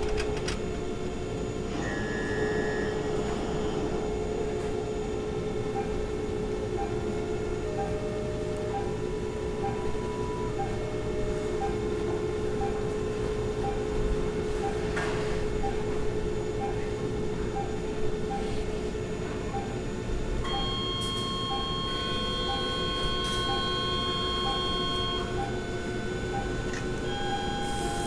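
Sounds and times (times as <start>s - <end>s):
electronic hum: 15.5s - 28.0s
soft beeps: 20.5s - 28.0s.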